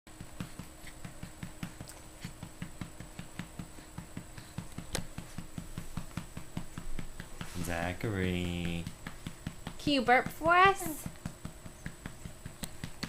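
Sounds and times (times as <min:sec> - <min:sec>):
soft patting on baby's back: 0:00.1 - 0:13.0
sharp tap: 0:08.4 - 0:13.0.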